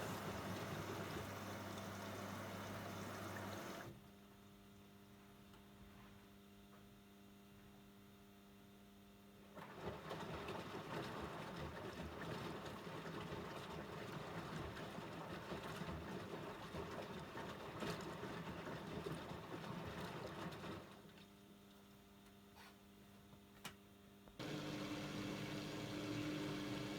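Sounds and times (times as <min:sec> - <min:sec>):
washing machine hum: 0:00.0 - 0:04.0, 0:09.4 - 0:21.5, 0:24.3 - 0:26.9
water rushing in washing machine: 0:00.0 - 0:04.0, 0:09.5 - 0:21.3, 0:24.4 - 0:26.9.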